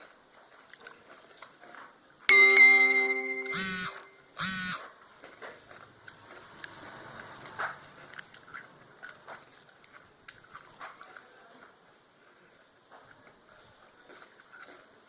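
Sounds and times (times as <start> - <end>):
person crunching a snack: 0.0 - 2.3, 5.1 - 11.8, 13.0 - 15.0
loud pitched chirp: 2.3 - 4.2.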